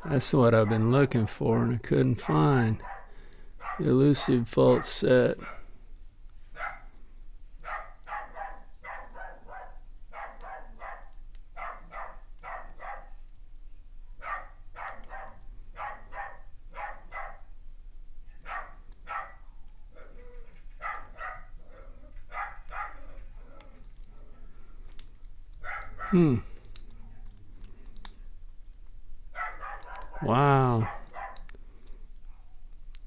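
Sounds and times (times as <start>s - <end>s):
dog barking: 0.6s - 0.9s, 2.2s - 5.7s, 6.6s - 6.9s, 7.6s - 13.2s, 14.2s - 17.5s, 18.4s - 23.8s, 25.6s - 26.3s, 29.4s - 31.5s.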